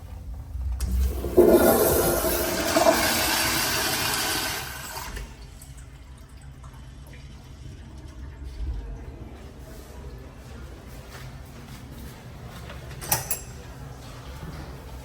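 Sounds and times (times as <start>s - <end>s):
toilet flushing water rushing: 0.0s - 9.7s.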